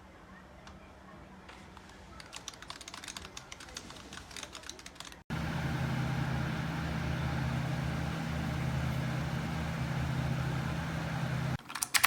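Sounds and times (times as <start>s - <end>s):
low mechanical hum: 5.3s - 11.6s.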